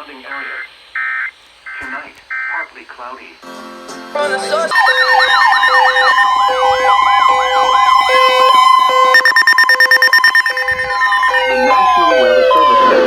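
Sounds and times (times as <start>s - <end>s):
low beep: 4.7s - 8.4s, 9.1s - 13.0s
steady alarm tone: 4.7s - 13.0s
up-and-down siren sweep: 4.7s - 13.0s.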